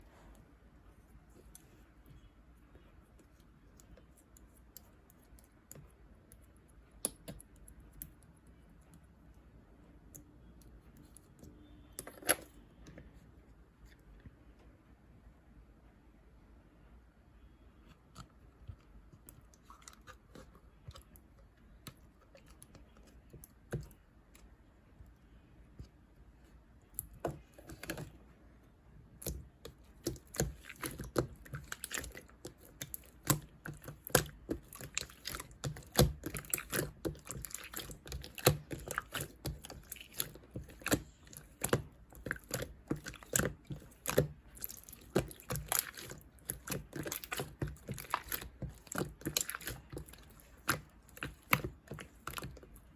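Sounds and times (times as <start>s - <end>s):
slime squished by hand: 29.2s - 52.9s.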